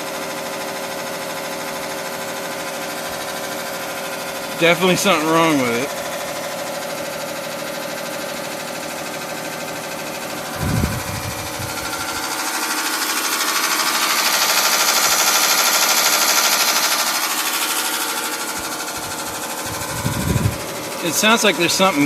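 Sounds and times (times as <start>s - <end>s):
air conditioner fan rattling: 0.0s - 22.0s.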